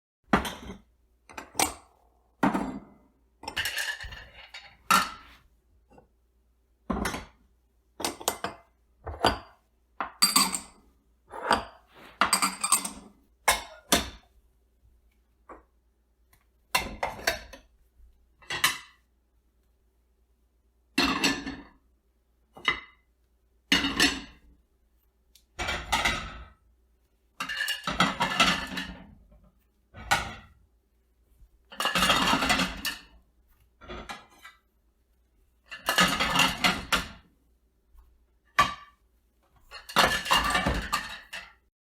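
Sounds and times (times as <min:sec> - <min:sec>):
dishes clinking and clattering: 0:00.4 - 0:05.3, 0:08.0 - 0:14.2, 0:23.7 - 0:24.4, 0:25.6 - 0:26.6, 0:27.4 - 0:29.2, 0:30.0 - 0:30.6, 0:31.7 - 0:33.2, 0:33.8 - 0:34.6, 0:35.7 - 0:37.3, 0:39.6 - 0:41.6.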